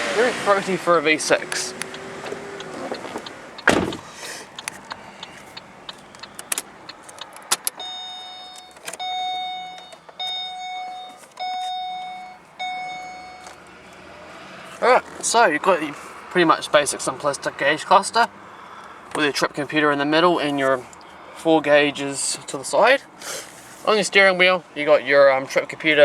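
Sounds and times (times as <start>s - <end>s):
car warning chime beeping: 0.4s - 14.4s
small clicks: 1.5s - 7.9s
thump: 3.6s - 4.1s.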